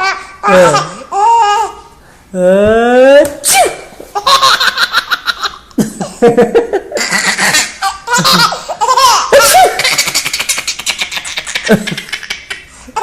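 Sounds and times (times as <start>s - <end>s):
baby laughing: 0.0s - 1.8s, 4.1s - 6.2s, 6.9s - 13.0s.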